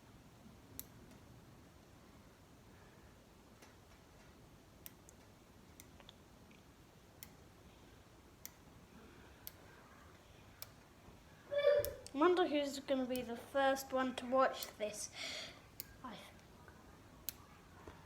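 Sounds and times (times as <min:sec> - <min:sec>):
magnetic balls clicking together: 0:14.6 - 0:15.0.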